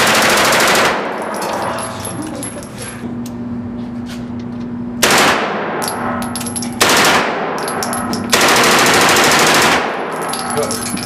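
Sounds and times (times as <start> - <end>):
automatic gunfire bursts: 0.0 - 1.1, 5.0 - 5.6, 6.8 - 7.5, 8.3 - 10.0.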